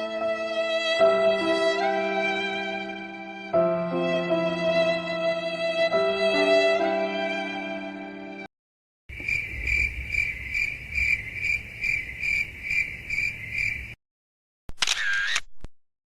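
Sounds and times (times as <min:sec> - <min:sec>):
crickets chirping: 0:09.1 - 0:14.0.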